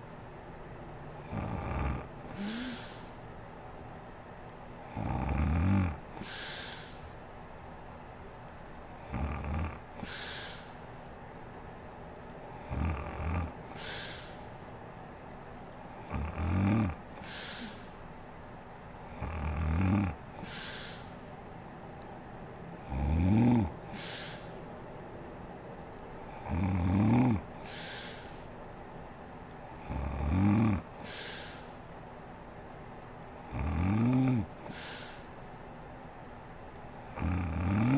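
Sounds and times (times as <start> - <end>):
woman snoring loudly: 1.2 - 3.1, 4.9 - 6.0, 9.0 - 10.6, 12.6 - 14.3, 16.0 - 17.9, 19.2 - 21.1, 22.9 - 24.4, 26.4 - 28.2, 29.8 - 31.6, 33.5 - 35.2, 37.2 - 37.9
hissing out-breath: 2.3 - 3.2, 6.2 - 7.0, 10.0 - 10.8, 13.7 - 14.5, 17.2 - 18.0, 20.4 - 21.2, 23.9 - 24.6, 27.6 - 28.4, 31.0 - 31.8, 34.6 - 35.3.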